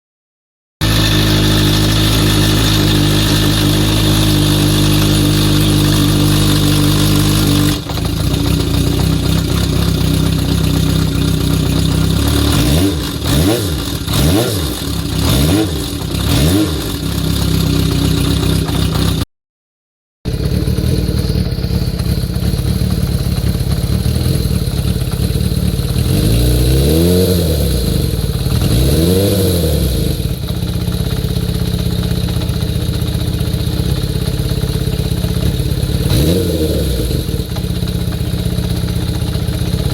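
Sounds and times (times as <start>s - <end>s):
motorcycle engine idling and revving: 0.8s - 19.3s, 20.3s - 39.9s.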